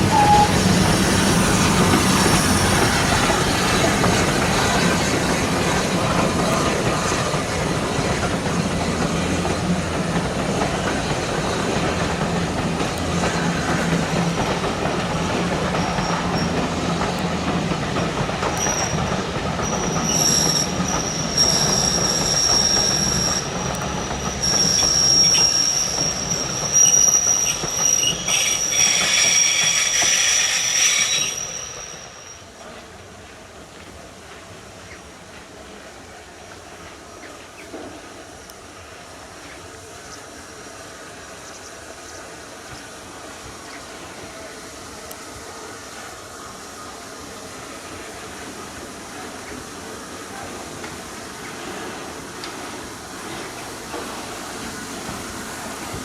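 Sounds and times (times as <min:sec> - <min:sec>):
high wheel squeal: 0:00.0 - 0:05.1, 0:15.6 - 0:16.8, 0:18.4 - 0:32.6
train wheels rumbling on rail: 0:00.0 - 0:56.0.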